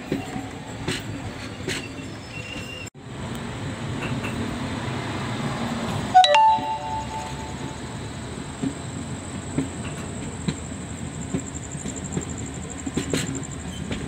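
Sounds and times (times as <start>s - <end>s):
loud ringing tones: 6.2s - 8.0s
train wheels rumbling: 7.8s - 14.0s.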